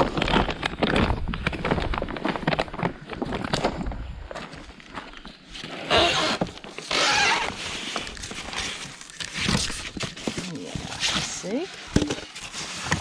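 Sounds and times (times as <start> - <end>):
rubble clattering and scraping: 7.7 - 13.0.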